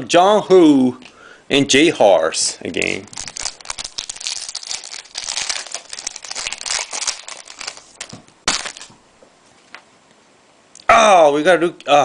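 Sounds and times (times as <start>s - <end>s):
card pack wrapper crinkling: 2.8s - 9.0s.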